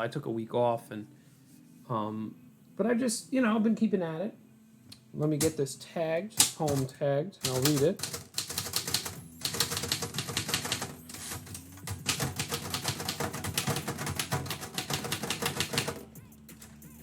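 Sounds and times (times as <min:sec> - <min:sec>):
typewriter keys typing: 0:06.4 - 0:17.0.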